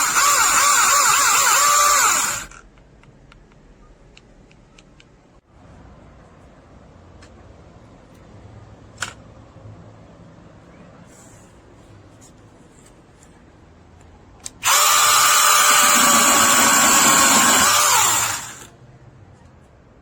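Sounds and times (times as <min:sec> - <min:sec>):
mini chainsaw motor whining: 0:00.0 - 0:02.5, 0:14.6 - 0:18.7.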